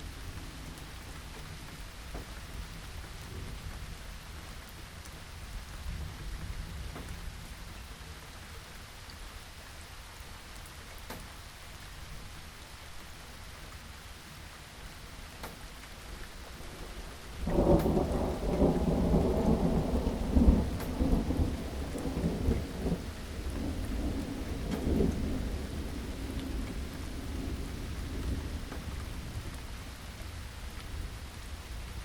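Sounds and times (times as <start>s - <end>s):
rain hissing: 0.0s - 32.0s
raindrops ticking: 0.2s - 9.8s, 15.0s - 32.0s
thunder rumbling: 16.5s - 30.0s.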